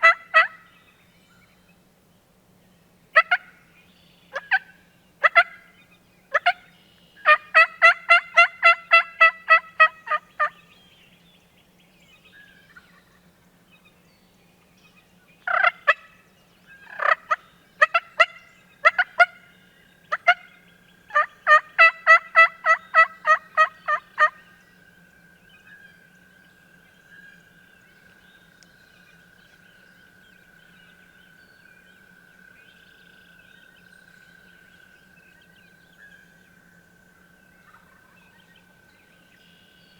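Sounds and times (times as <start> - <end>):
turkey clucks: 0.0 - 0.6, 3.2 - 3.5, 4.3 - 5.7, 6.3 - 6.6, 7.2 - 10.6, 15.5 - 16.0, 16.8 - 19.4, 21.1 - 24.5, 37.6 - 38.2
turkey yelping: 0.0 - 0.6, 7.2 - 10.5, 15.5 - 16.0, 16.9 - 19.3, 21.1 - 24.4.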